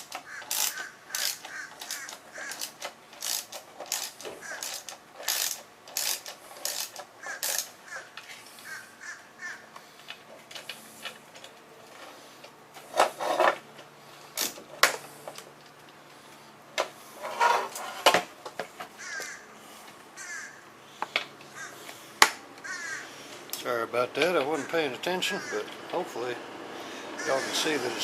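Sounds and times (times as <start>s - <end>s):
hand tools clicking on bolts: 0.0s - 8.3s
harsh animal calls: 0.2s - 2.8s, 4.4s - 4.8s, 7.2s - 9.7s, 19.0s - 19.5s, 20.2s - 20.8s, 21.5s - 21.9s, 22.6s - 23.3s, 24.5s - 25.8s, 26.8s - 28.0s.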